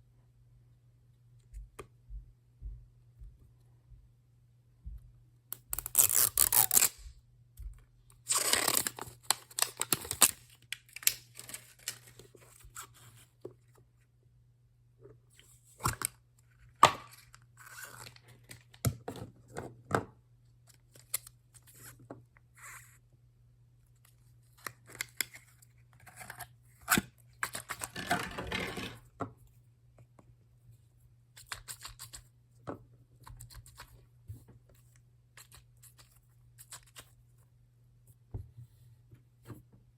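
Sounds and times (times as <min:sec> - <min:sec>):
packaging tearing: 0:05.6 - 0:07.0, 0:08.3 - 0:12.1.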